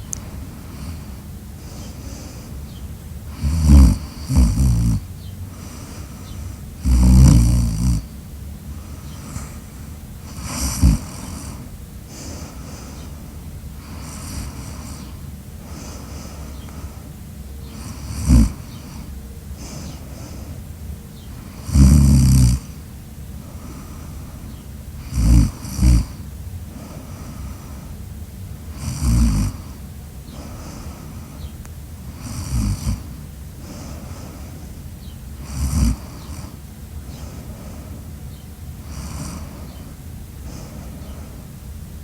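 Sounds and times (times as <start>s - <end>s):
soft breathing: 0.0s - 42.0s
loud snoring: 0.6s - 2.5s, 3.3s - 8.2s, 8.8s - 13.0s, 13.8s - 16.9s, 17.6s - 20.5s, 21.4s - 22.8s, 25.0s - 27.9s, 28.6s - 31.4s, 32.1s - 34.6s, 35.4s - 38.0s, 38.8s - 41.4s.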